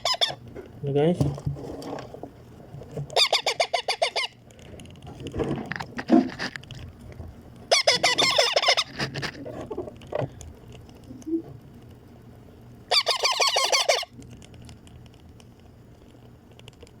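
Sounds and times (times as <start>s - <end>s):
parakeet begging calls: 0.0s - 0.4s, 3.2s - 4.4s, 7.7s - 9.0s, 12.9s - 14.1s.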